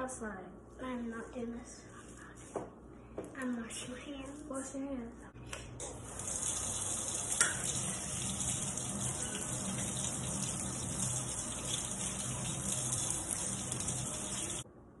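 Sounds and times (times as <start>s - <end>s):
tap water running: 5.8s - 14.7s
hands washing under water: 6.0s - 14.6s.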